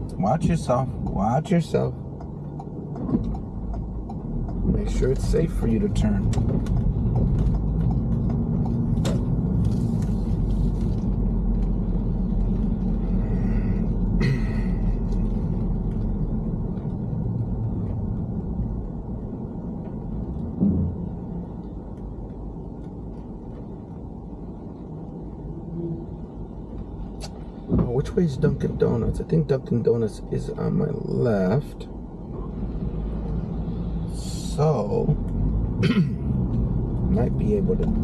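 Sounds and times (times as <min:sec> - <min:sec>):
road and engine rumble inside car: 0:00.0 - 0:38.0
short thump: 0:20.6 - 0:21.0.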